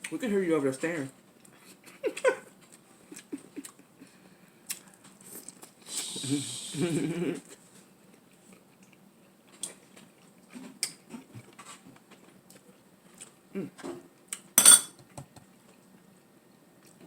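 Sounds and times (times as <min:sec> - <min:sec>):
cutlery clatter: 0:14.6 - 0:15.0
cutlery clinking against dishes: 0:14.6 - 0:15.0.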